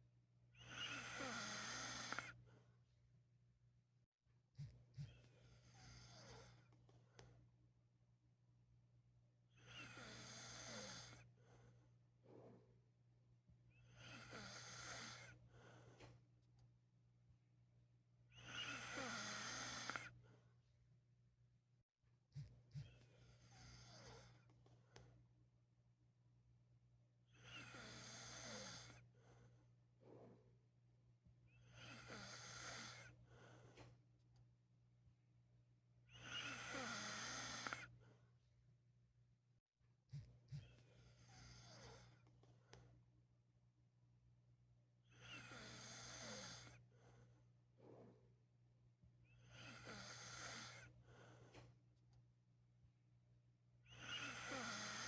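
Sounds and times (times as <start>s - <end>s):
man snoring: 0.7s - 2.3s, 18.5s - 20.1s, 31.7s - 33.1s, 36.2s - 37.8s, 45.3s - 46.7s, 49.5s - 50.9s, 54.0s - 55.0s.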